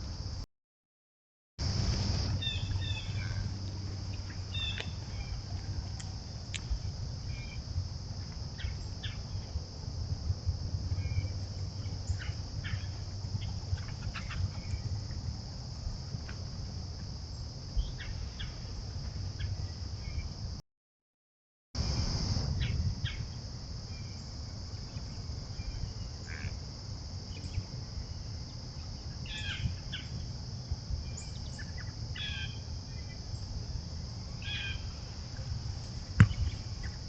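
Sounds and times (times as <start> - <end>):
crickets chirping chorus: 0.0 - 0.4, 1.6 - 20.6, 21.8 - 37.0
low steady hum: 1.6 - 20.4.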